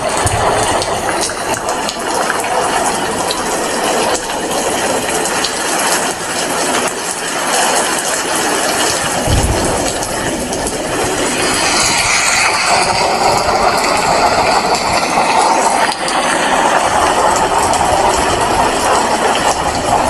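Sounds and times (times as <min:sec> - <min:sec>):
steady rain falling: 0:00.0 - 0:20.0
brief low thump: 0:09.2 - 0:11.4.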